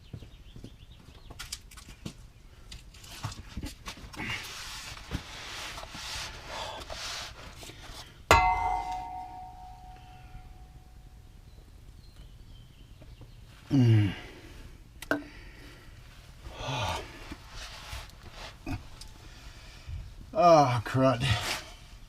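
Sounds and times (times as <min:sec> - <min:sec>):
sharp metallic clang: 0:08.3 - 0:10.7.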